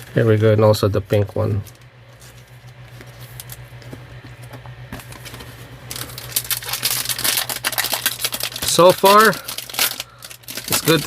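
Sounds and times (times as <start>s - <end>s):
plastic packaging crinkling: 5.0s - 11.0s.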